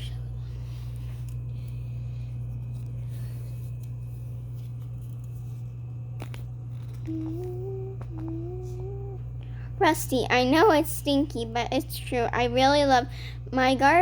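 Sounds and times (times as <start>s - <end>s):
low electrical hum: 0.0s - 14.0s
child humming: 7.0s - 9.4s.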